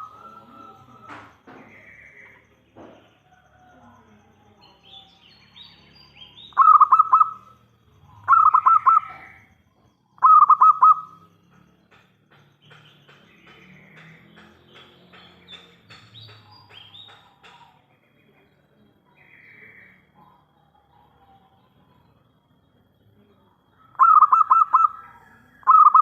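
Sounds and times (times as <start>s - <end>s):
dove cooing: 0.0s - 2.4s, 6.5s - 9.5s, 10.1s - 11.3s, 23.8s - 26.0s
small birds chirping: 0.0s - 26.0s.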